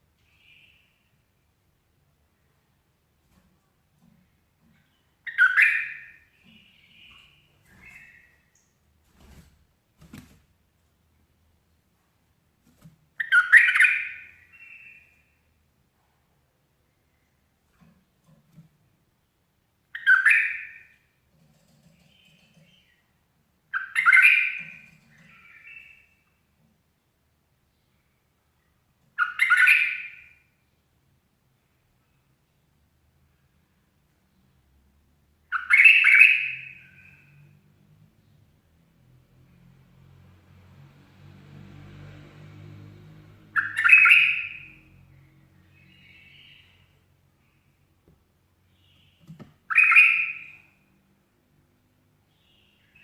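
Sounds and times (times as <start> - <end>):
bird warbling song: 4.6 - 8.8, 13.2 - 15.4, 19.9 - 26.4, 29.1 - 30.4, 35.4 - 37.5, 43.5 - 47.7, 48.7 - 50.9
bulbul calling: 5.2 - 8.3, 19.9 - 21.0, 23.7 - 26.0, 43.6 - 44.7, 48.8 - 50.7.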